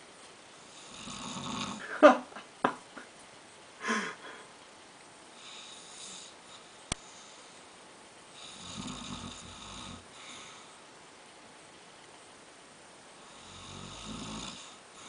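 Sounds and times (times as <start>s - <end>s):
man snoring: 0.7s - 2.0s, 8.4s - 10.1s, 13.3s - 14.8s.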